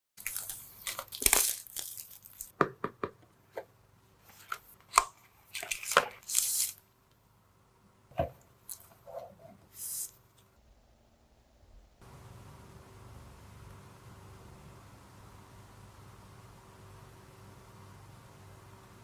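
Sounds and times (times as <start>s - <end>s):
plastic or paper rustling: 0.2s - 2.5s, 5.4s - 6.8s.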